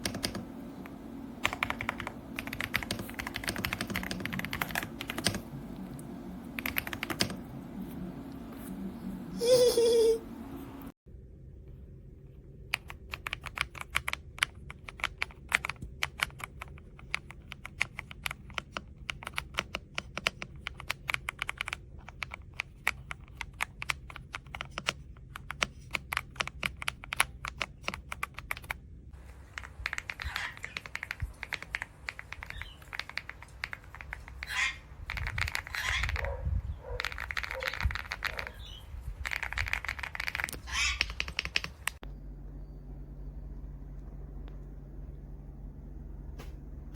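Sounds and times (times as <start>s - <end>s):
mechanical keyboard key clicks: 39.2s - 42.0s.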